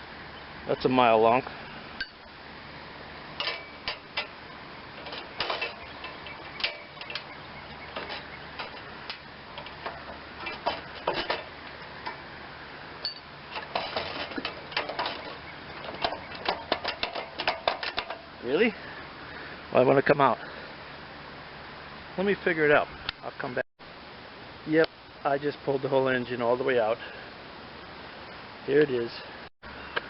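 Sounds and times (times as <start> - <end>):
metal tools clinking: 3.4 - 4.4, 5.0 - 12.2, 13.0 - 18.4.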